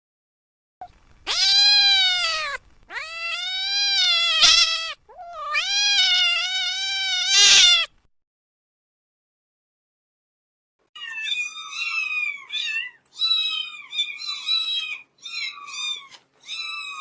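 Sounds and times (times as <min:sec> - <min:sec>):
cat meowing: 0:01.2 - 0:07.9, 0:11.0 - 0:17.0.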